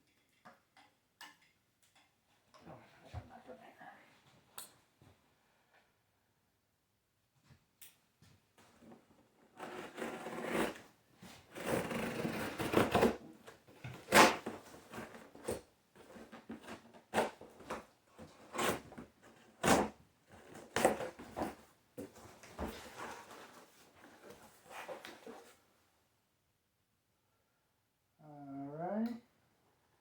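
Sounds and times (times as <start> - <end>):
cardboard scraping and rustling: 11.4 - 25.6.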